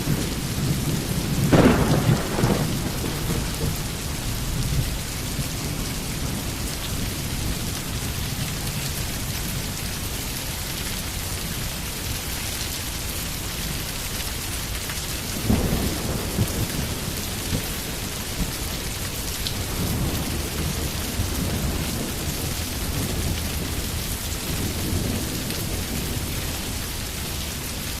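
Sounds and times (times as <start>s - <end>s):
thunder rumbling: 0.0s - 8.8s, 15.2s - 28.0s
heavy rainfall: 0.0s - 28.0s.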